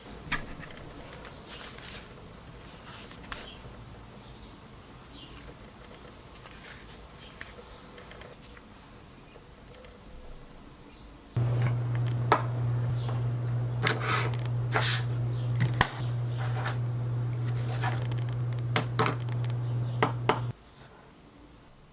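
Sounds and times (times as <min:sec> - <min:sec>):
rustling and scraping of items: 0:00.4 - 0:03.7, 0:05.2 - 0:08.9, 0:13.8 - 0:15.8
low electrical hum: 0:11.4 - 0:20.6.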